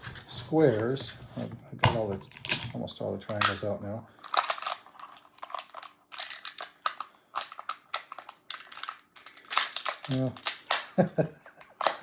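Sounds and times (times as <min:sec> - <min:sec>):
plastic tiles clacking together: 0:04.2 - 0:11.0.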